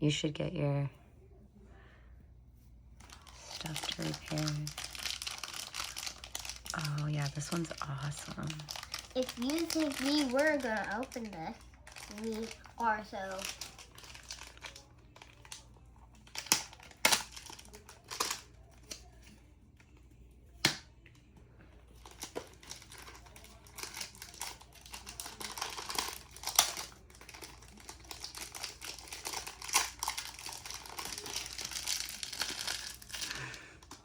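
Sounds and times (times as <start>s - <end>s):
wrapping crinkling and rustling: 3.0s - 20.0s, 21.2s - 34.0s
packaging clicks and snaps: 13.3s - 19.1s, 22.0s - 34.0s.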